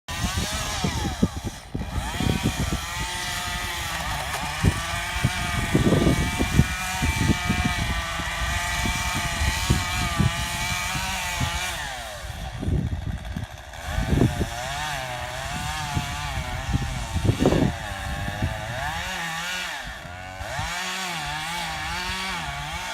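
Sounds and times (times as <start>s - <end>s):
chainsaw revving: 0.1s - 22.9s.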